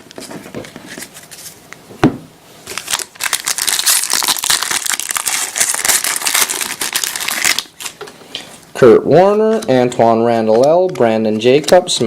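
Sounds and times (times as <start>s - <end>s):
thump: 2.0s - 2.2s
wrapper crinkling and tearing: 2.6s - 8.0s.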